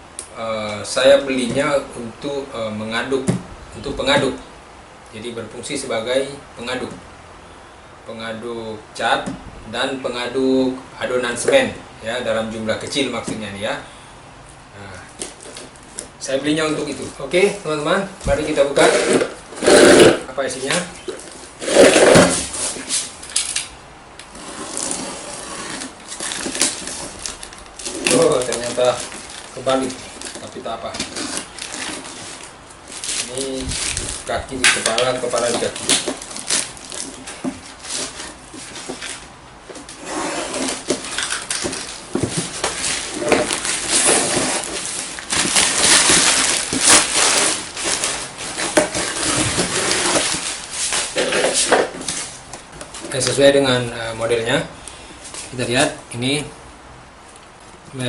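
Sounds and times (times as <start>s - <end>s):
packaging scraping and rustling: 15.2s - 23.7s, 24.3s - 53.8s.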